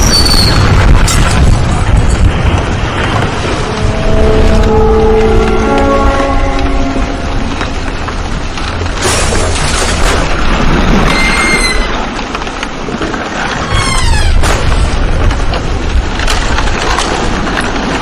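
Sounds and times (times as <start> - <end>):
deep rumble: 0.0 - 18.0
high metallic squeal: 3.4 - 7.9
falling screech: 11.0 - 12.0.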